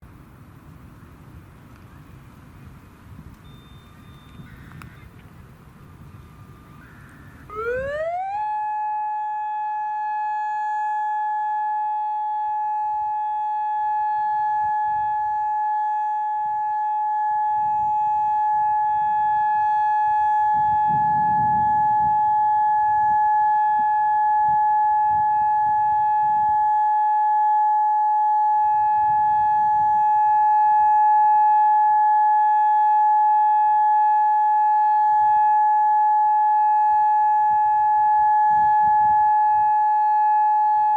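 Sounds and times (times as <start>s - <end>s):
warning siren steady tone: 0.0s - 40.9s.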